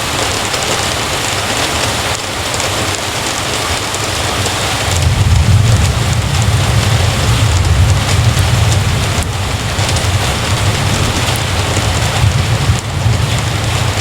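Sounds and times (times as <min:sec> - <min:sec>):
heavy rain falling: 0:00.0 - 0:14.0
low rumble: 0:04.9 - 0:14.0.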